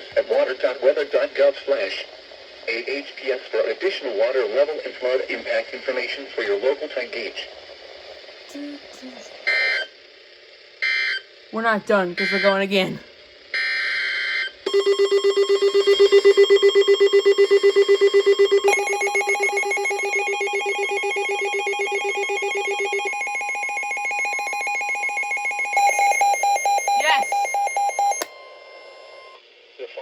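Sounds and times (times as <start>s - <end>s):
buzzy data noise burst: 0.0s - 14.8s.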